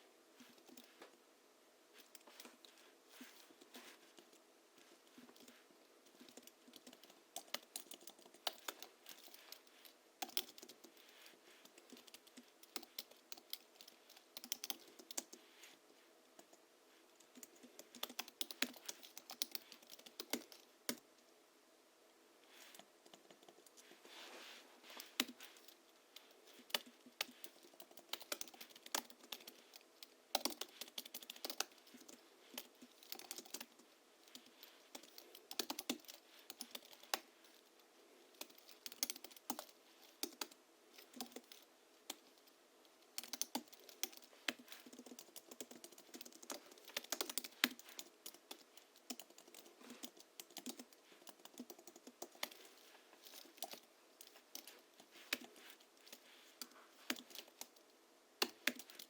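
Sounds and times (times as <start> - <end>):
thocky keyboard typing: 6.1 - 9.6, 10.2 - 10.9, 11.7 - 15.4, 17.3 - 21.0, 25.0 - 25.7, 26.5 - 37.2, 38.4 - 42.3, 43.2 - 52.6, 53.3 - 57.8, 58.4 - 59.0.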